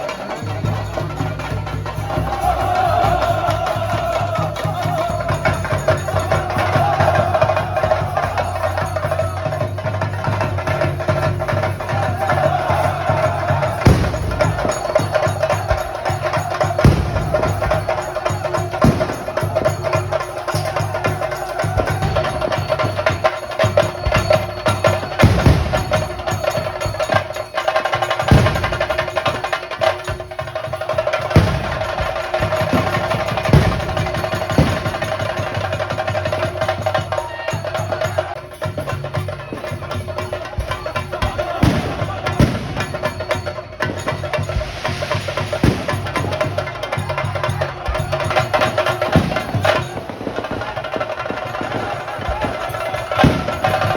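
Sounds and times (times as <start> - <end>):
drums beaten continuously: 0.0 - 53.9.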